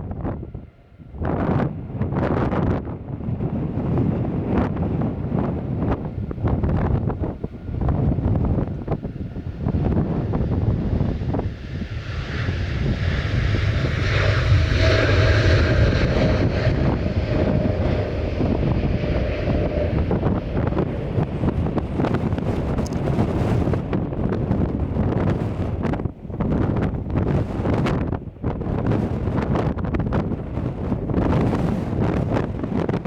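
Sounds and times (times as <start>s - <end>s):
jet airliner passing: 0.0s - 33.0s
wind buffeting microphone: 0.0s - 33.0s.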